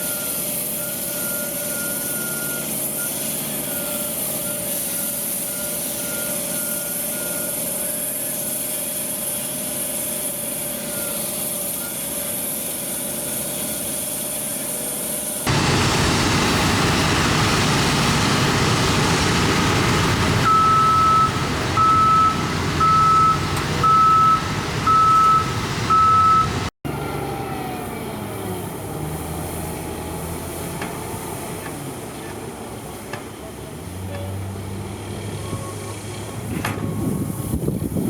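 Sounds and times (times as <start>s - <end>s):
reversing alarm beeps: 0.0s - 8.4s, 10.8s - 12.3s, 20.4s - 26.6s
diesel machine engine running: 0.0s - 38.0s
heavy engine pitch sliding: 0.0s - 38.0s.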